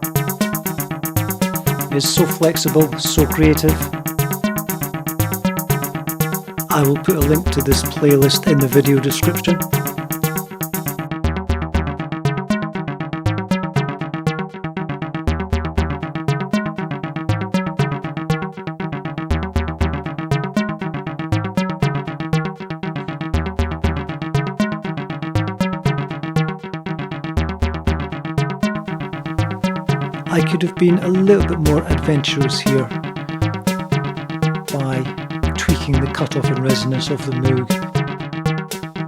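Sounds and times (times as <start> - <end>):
house music: 0.0 - 11.1, 28.8 - 39.0.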